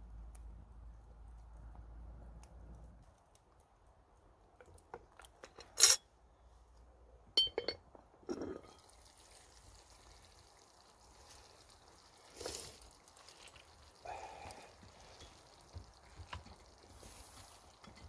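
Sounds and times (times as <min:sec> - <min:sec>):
soft steady hiss: 0:00.0 - 0:18.0
ringing metallic clink: 0:07.4 - 0:07.8.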